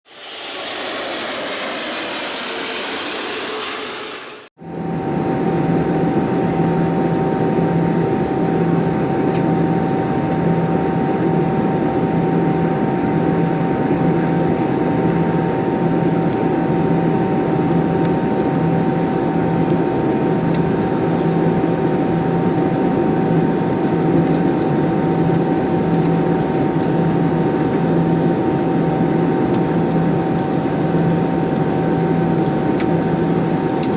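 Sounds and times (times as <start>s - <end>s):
pulsing low hum: 0.0s - 4.5s
whining tones: 0.1s - 4.5s
jet cabin noise: 0.1s - 6.6s.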